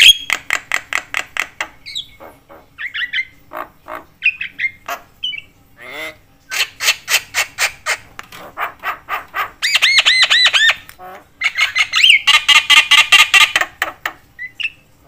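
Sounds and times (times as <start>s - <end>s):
bird harsh squawks: 1.9s - 13.7s.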